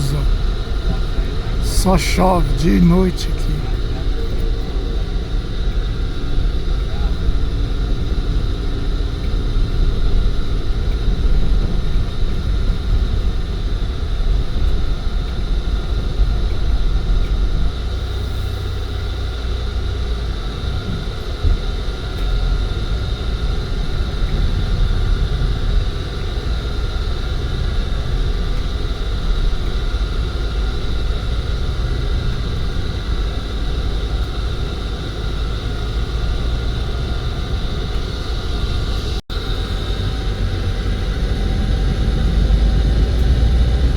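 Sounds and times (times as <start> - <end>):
bus engine and road rumble: 0.0 - 13.4.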